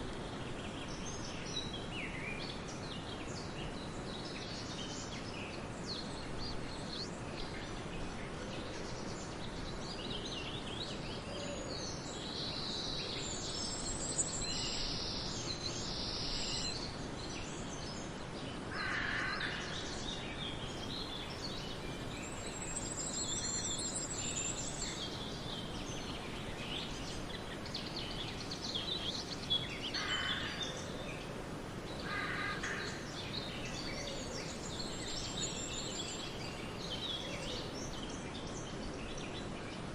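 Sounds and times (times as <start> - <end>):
background hiss: 0.0 - 39.9
birds chirping: 20.6 - 38.0
harsh bird calls: 20.9 - 37.8.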